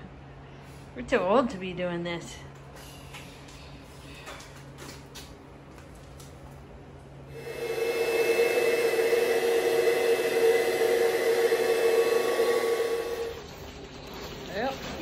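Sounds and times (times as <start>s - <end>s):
machine motor humming: 7.3s - 13.6s.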